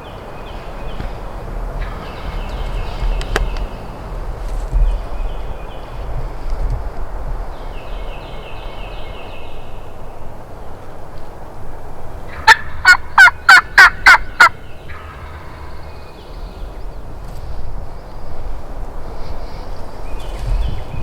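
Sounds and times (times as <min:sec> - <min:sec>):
wind rumble on microphone: 0:00.0 - 0:21.0
turkey call yelping: 0:12.3 - 0:15.8.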